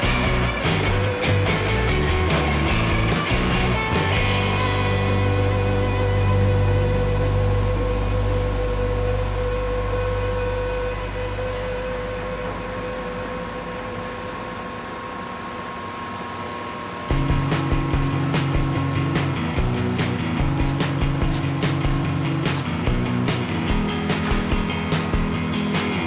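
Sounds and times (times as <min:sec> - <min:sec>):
rock music with guitar: 0:00.0 - 0:09.1, 0:17.1 - 0:26.0
steady low hum: 0:00.0 - 0:16.2, 0:17.0 - 0:26.0.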